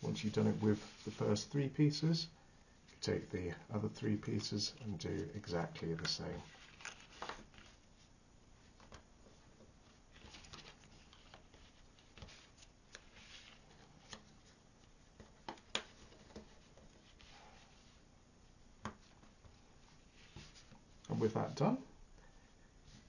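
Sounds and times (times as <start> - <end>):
paper rustling: 4.3 - 9.0, 9.8 - 18.0.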